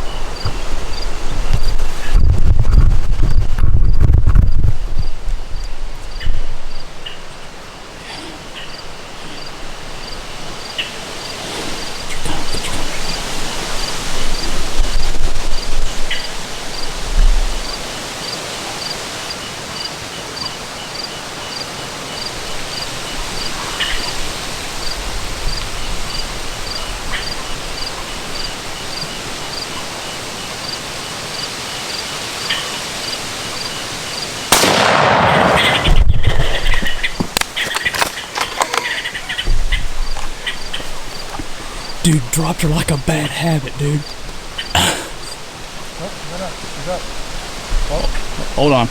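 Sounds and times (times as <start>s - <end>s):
insects chirping: 0.0s - 1.8s, 3.2s - 35.0s, 35.8s - 42.0s
wind gusts rumbling on microphone: 0.0s - 7.0s
wind noise: 0.0s - 7.0s, 35.4s - 38.0s
gunshot crack: 34.5s - 36.7s.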